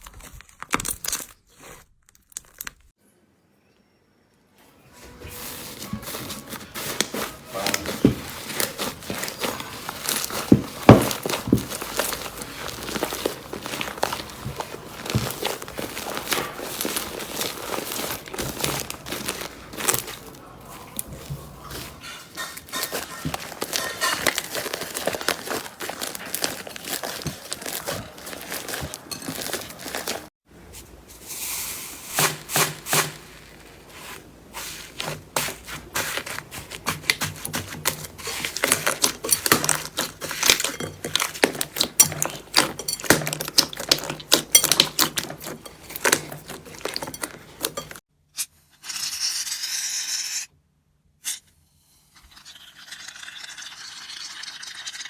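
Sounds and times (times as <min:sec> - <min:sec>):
slime squeezed crackling: 0:05.9 - 0:30.3, 0:36.0 - 0:48.0.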